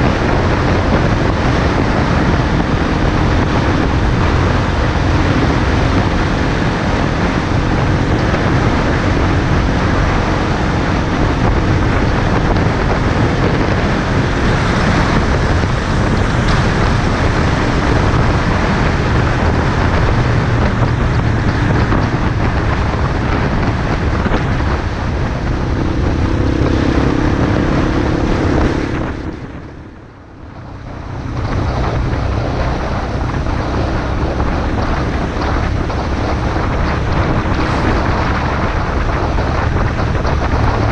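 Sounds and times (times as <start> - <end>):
motorcycle engine running: 0.0 - 40.9
wind rush over microphone: 0.0 - 40.9.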